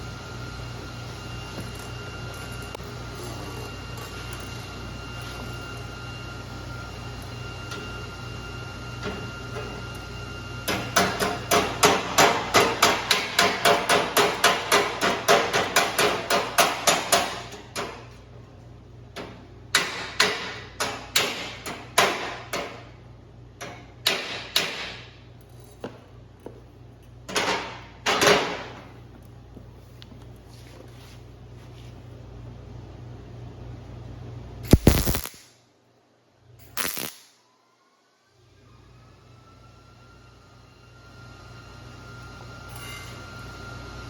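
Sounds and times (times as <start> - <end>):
hammer striking sheet steel: 10.7 - 18.1, 19.7 - 22.8, 23.7 - 25.1.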